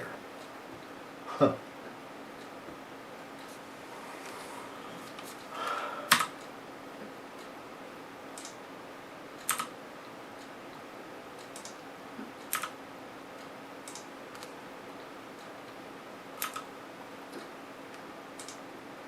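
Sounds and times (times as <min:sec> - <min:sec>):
low electrical hum: 0:00.0 - 0:19.0
computer keys clicking: 0:06.1 - 0:06.5, 0:08.4 - 0:08.6, 0:09.4 - 0:09.7, 0:11.4 - 0:11.8, 0:12.4 - 0:12.8, 0:13.8 - 0:14.6, 0:16.4 - 0:16.7, 0:18.4 - 0:18.6.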